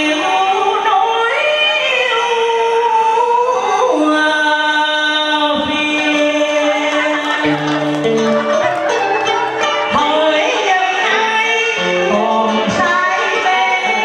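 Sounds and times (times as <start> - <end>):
backing track: 5.7 - 12.4
solo guitar melody with slides: 7.4 - 14.0.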